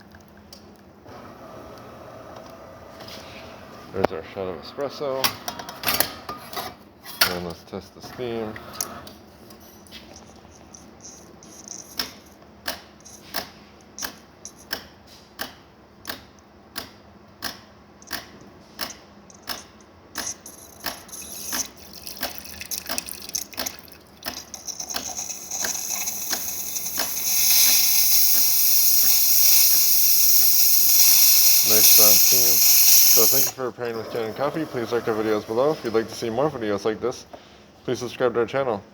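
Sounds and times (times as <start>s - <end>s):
steam wand hissing: 20.3s - 21.8s, 24.4s - 33.6s
espresso machine clicking: 24.2s - 33.5s.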